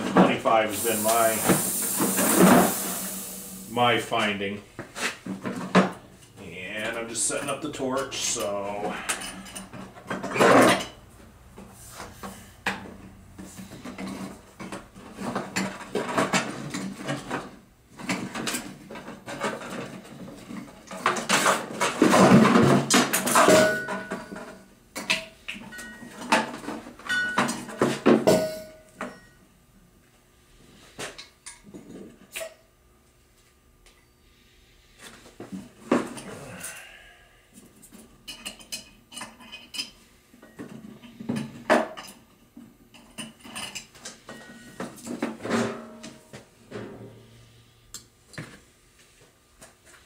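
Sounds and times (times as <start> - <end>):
tools clattering on workbench: 13.9 - 29.3.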